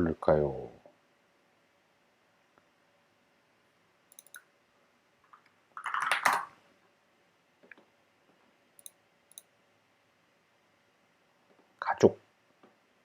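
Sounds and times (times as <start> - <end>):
computer mouse clicks: 4.1 - 4.5, 8.8 - 9.5.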